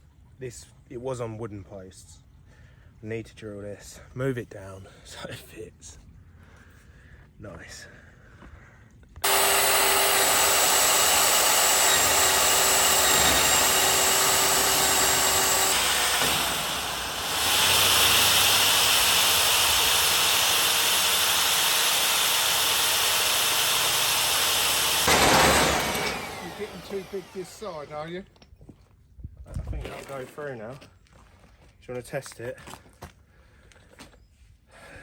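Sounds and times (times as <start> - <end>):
electric drill boring: 9.2 - 28.1.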